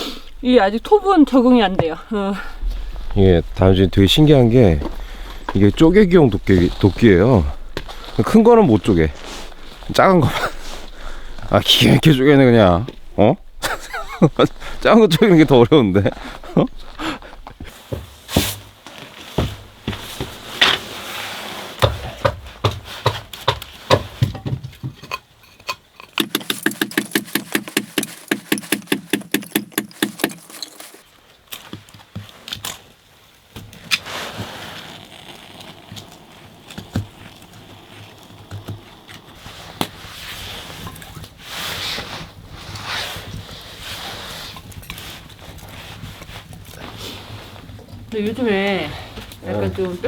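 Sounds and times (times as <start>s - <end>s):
axe splitting wood knocks: 26.2s - 30.4s
hand saw strokes: 26.2s - 31.0s
saw scraping: 26.2s - 31.0s.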